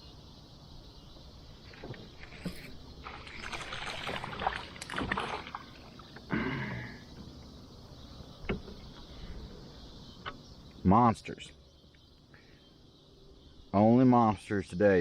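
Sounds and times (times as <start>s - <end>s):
water splashing around kayak: 1.7s - 6.3s.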